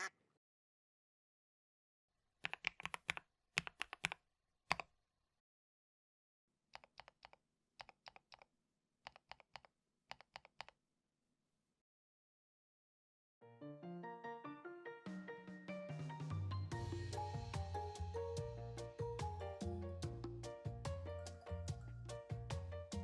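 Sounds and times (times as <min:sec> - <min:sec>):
mechanical keyboard typing: 0:02.4 - 0:04.8.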